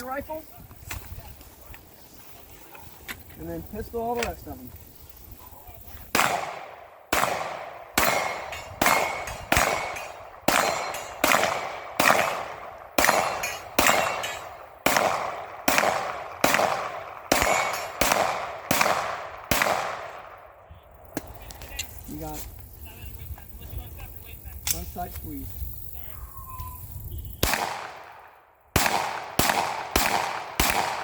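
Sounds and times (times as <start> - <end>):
pistol shots echoing: 6.1 - 20.5, 27.4 - 31.0.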